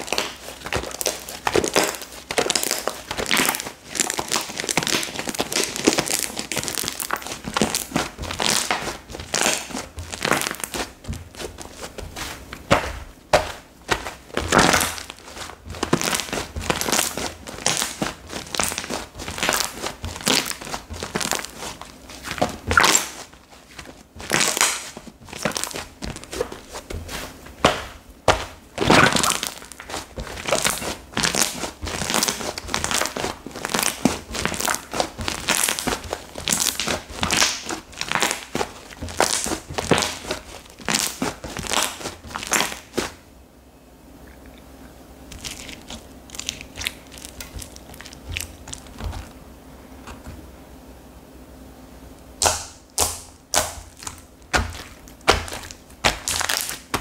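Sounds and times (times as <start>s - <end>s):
slime squeezed by hand: 13.4s - 43.2s.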